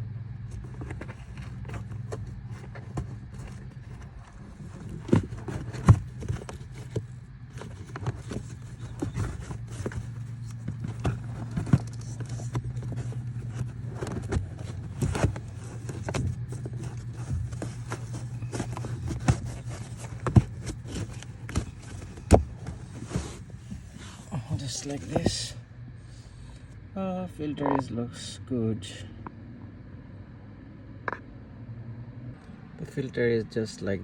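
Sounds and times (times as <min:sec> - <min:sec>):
steady low hum: 0:00.0 - 0:34.0
plastic clicks and scrapes: 0:00.5 - 0:24.0.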